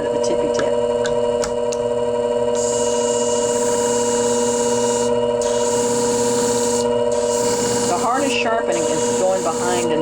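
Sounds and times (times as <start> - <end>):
sharpening machine humming: 0.0 - 10.0
blade hissing against grinding stone: 2.6 - 10.0.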